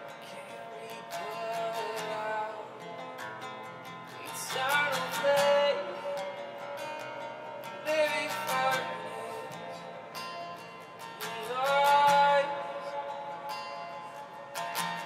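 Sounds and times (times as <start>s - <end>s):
person singing: 0.0s - 3.2s, 4.0s - 7.2s, 7.8s - 15.0s
strummed acoustic guitar: 0.0s - 15.0s.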